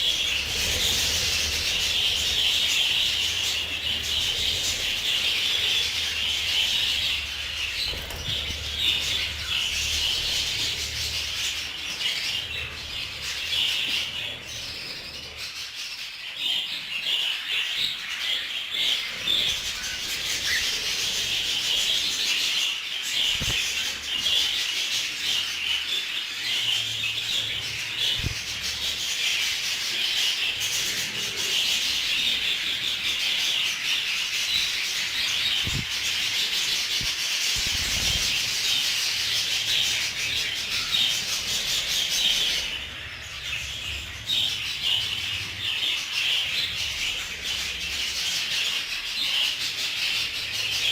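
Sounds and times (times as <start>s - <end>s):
budgerigars chattering and warbling: 0.0s - 50.9s.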